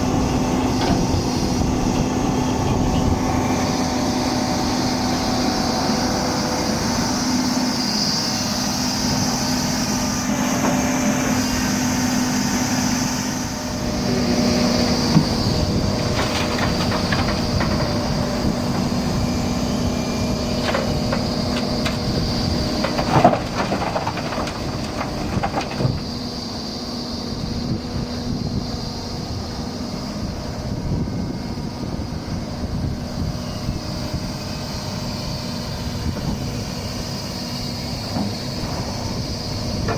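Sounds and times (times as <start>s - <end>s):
excavator diesel engine running: 0.0s - 39.9s
sharp metal knocks and clanks: 15.0s - 19.2s.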